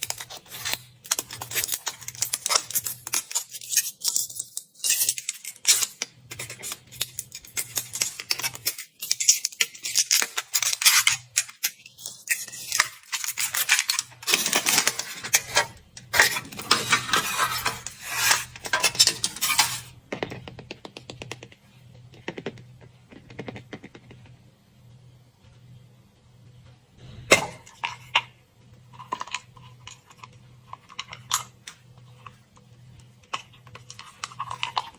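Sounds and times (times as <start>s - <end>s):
foil wrapper crinkling and tearing: 0.0s - 19.9s, 33.3s - 34.9s.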